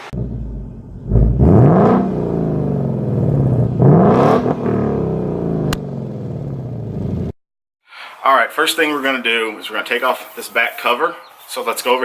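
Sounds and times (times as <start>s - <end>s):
car engine revving: 0.0s - 7.3s.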